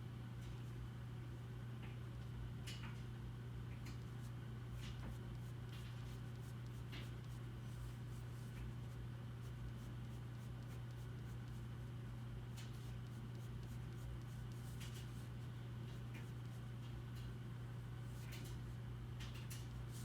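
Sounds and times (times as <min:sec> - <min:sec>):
steady low hum: 0:00.0 - 0:20.0
pencil scratching on paper: 0:08.2 - 0:11.6, 0:12.8 - 0:14.9.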